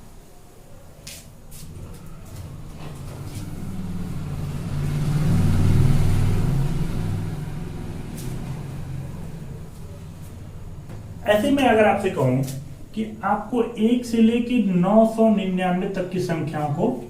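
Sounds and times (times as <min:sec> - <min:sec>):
vehicle engine passing by: 0:01.5 - 0:12.9.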